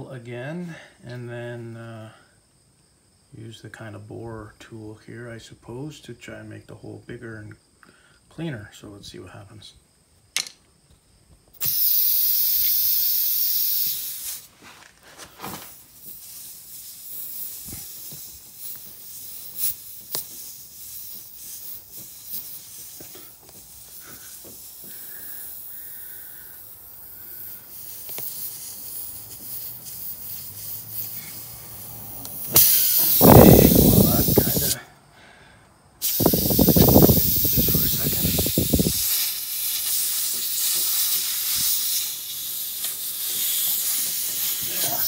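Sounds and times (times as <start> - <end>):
air hissing out of a tire: 11.6 - 45.0.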